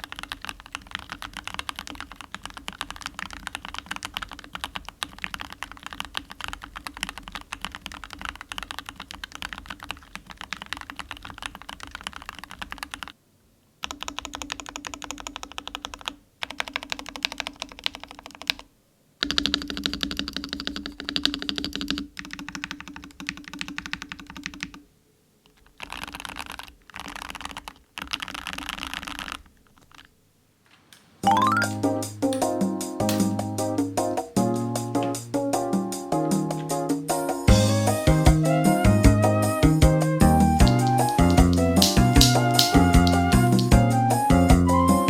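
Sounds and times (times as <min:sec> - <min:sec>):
mechanical keyboard typing: 0:00.0 - 0:13.2, 0:13.8 - 0:24.8, 0:25.5 - 0:30.1, 0:40.6 - 0:43.8.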